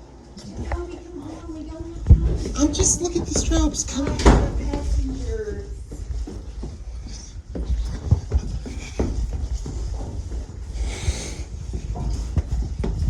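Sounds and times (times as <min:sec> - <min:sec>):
footsteps on hard stairs: 0:00.8 - 0:13.0.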